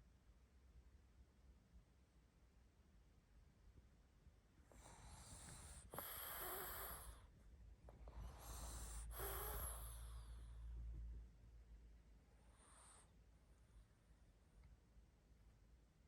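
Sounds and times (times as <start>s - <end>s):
dog snoring and snorting: 4.8s - 7.2s, 8.1s - 10.5s.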